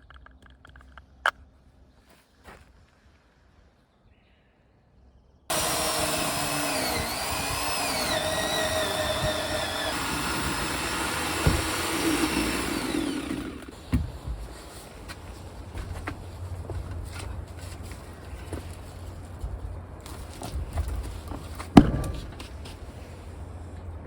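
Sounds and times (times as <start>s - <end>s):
chainsaw cutting wood: 5.5s - 14.0s
knock: 11.4s - 11.7s.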